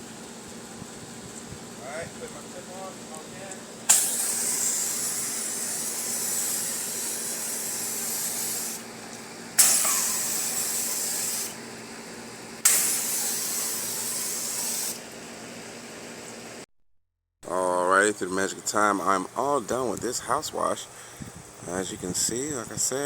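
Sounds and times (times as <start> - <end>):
steady machine hum: 0.0 - 16.6
pressure washer water spray: 3.8 - 15.4.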